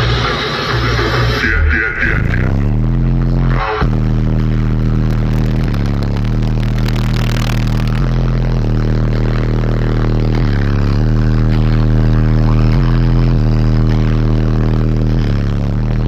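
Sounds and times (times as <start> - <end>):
bass-heavy music through subwoofer: 0.0 - 16.0.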